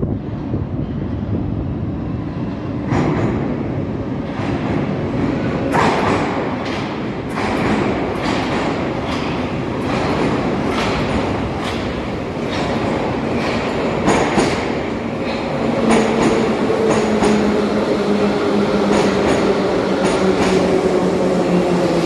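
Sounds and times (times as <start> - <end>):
train rumbling on rails: 0.0 - 22.0
wheels clacking over rail joints: 5.6 - 17.5.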